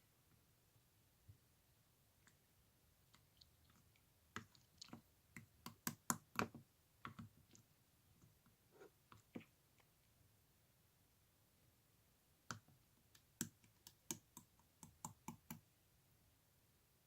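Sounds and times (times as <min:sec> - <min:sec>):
faint clicks and taps: 0:03.0 - 0:10.0, 0:12.5 - 0:15.7.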